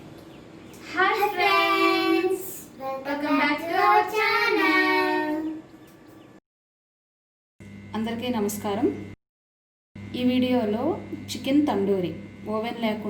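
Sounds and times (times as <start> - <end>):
high child-like voice singing: 0.9 - 5.6.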